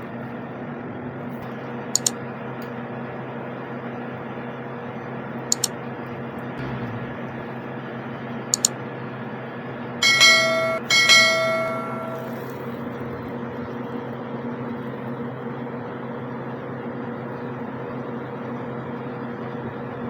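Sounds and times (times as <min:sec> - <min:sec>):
steady hum: 0:00.0 - 0:20.0
faint clicks: 0:02.0 - 0:02.7, 0:05.5 - 0:05.7
bell-like chime tones: 0:10.0 - 0:12.5.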